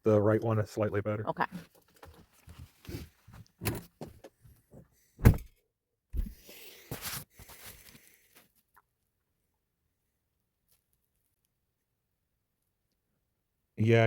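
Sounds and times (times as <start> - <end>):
loud thumps: 5.2 - 5.5.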